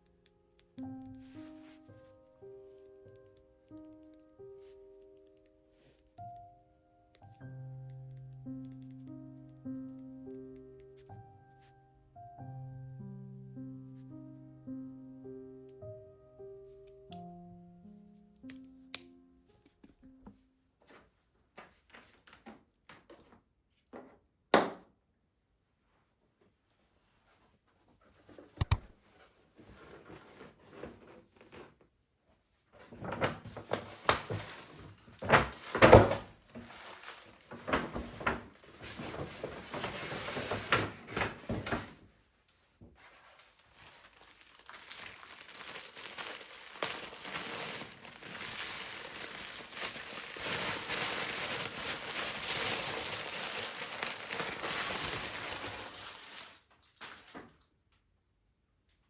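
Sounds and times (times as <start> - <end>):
clatter and rustling: 29.5 - 31.9, 32.8 - 42.0.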